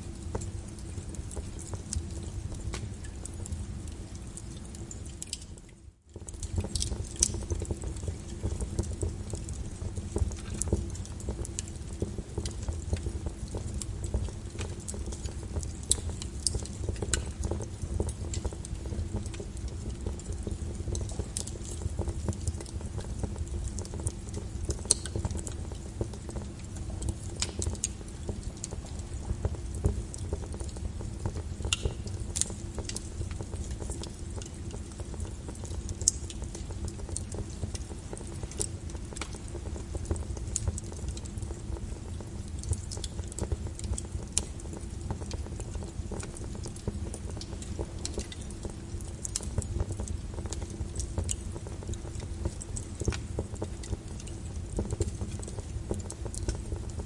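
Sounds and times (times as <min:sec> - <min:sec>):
fireplace crackles: 0:00.0 - 0:57.0.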